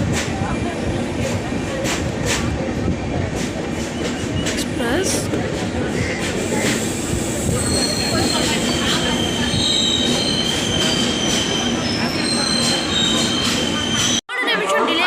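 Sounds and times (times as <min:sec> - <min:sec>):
train rumbling on track: 0:00.0 - 0:14.2
metallic wheel squeal: 0:07.5 - 0:14.2.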